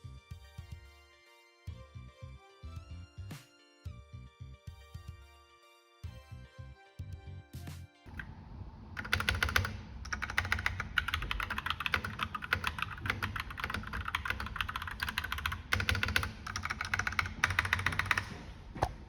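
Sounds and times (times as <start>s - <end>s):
fast typing on mechanical keyboard: 9.0s - 18.5s.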